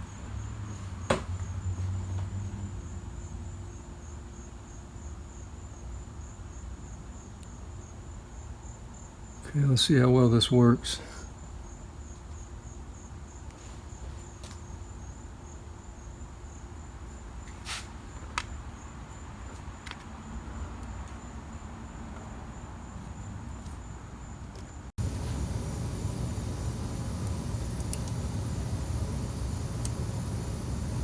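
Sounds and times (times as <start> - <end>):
crickets chirping: 0.0 - 31.0
loud low rumbling: 25.0 - 31.0.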